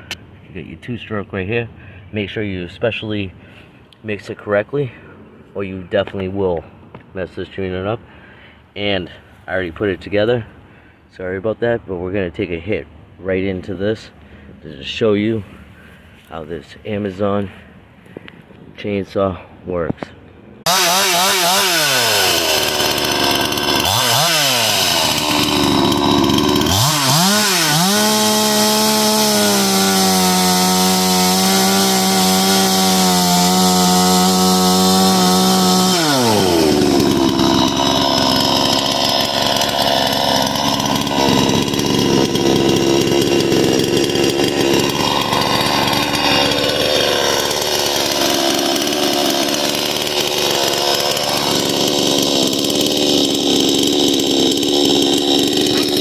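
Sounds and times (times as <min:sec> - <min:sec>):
chainsaw cutting wood: 0:20.6 - 0:56.0
chainsaw revving: 0:20.6 - 0:56.0.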